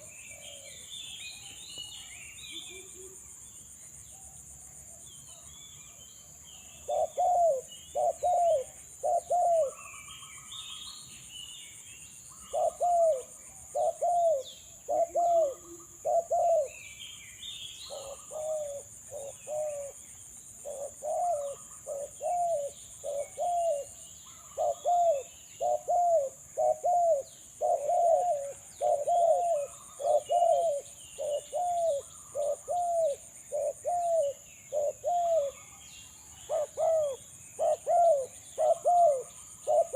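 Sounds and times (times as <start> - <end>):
dove cooing: 0.0 - 0.9, 6.8 - 10.7, 12.4 - 16.8, 17.8 - 20.0, 20.6 - 35.8, 36.4 - 39.9.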